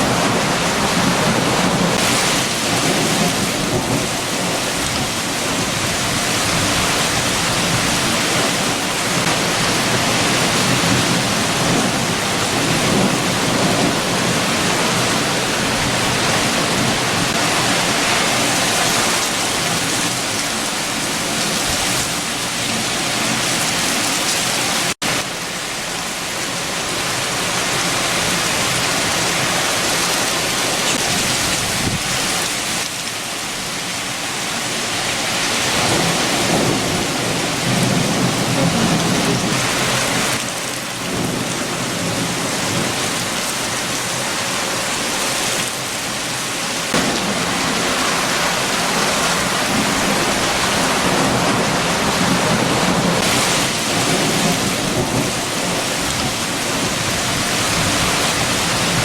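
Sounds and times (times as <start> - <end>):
heavy rain: 0.0 - 59.0
strong wind: 0.0 - 59.0.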